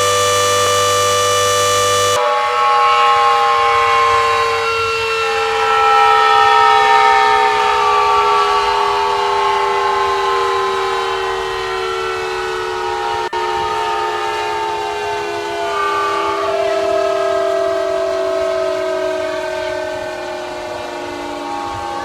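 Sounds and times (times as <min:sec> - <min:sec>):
washing machine motor winding down: 0:00.0 - 0:02.2.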